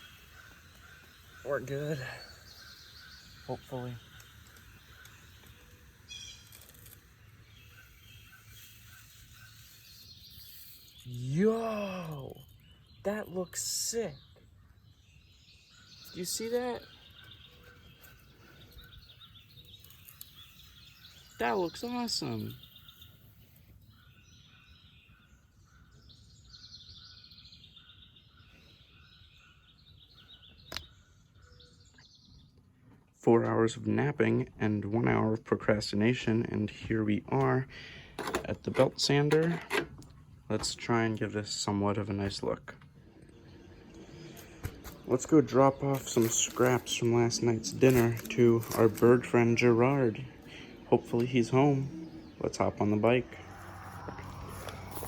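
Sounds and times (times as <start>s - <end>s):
high bird call: 0.0s - 12.6s
faint bird chirps: 0.0s - 32.9s.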